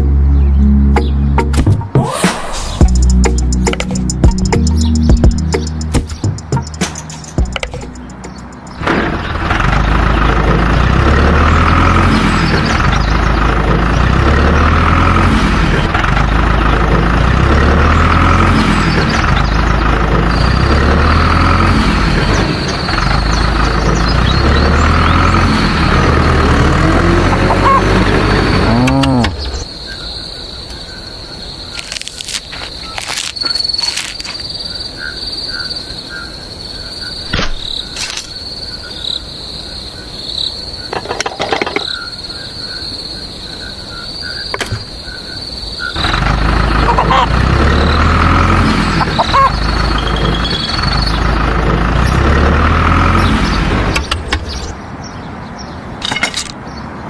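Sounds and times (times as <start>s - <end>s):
music with heavy bass line: 2.8s - 7.9s
insects chirring: 18.3s - 27.4s, 28.1s - 51.4s.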